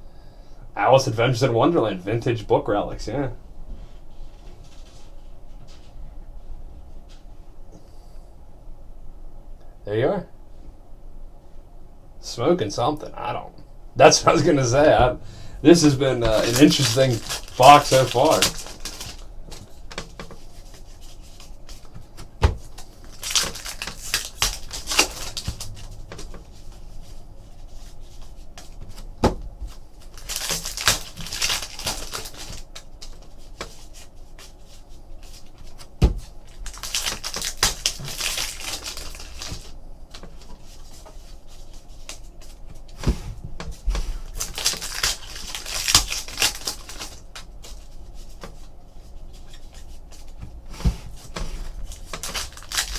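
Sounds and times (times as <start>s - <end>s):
crinkly wrapper rustling: 15.7s - 29.1s, 29.7s - 39.8s, 44.2s - 50.4s, 51.1s - 52.9s.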